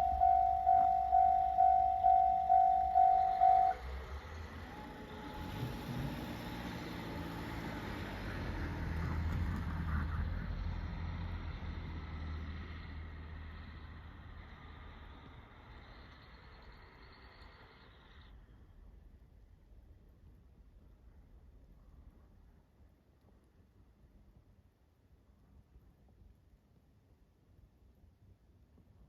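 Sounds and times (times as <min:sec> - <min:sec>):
level crossing bell ringing: 0:00.0 - 0:03.8
vehicle passing over crossing: 0:00.0 - 0:18.2.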